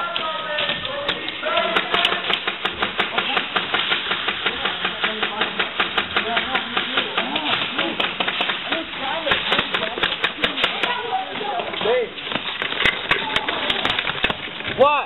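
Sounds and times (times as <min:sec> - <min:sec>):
indistinct voices: 0:00.0 - 0:15.0
rapid airsoft gunfire: 0:00.6 - 0:11.5.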